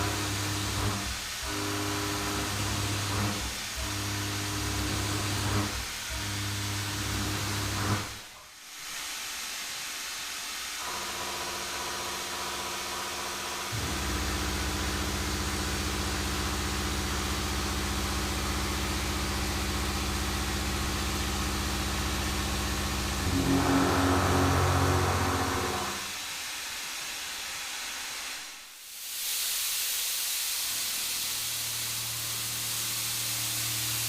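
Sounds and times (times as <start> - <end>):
machine tool humming: 13.7 - 26.1
deeper loud hum: 13.8 - 26.1.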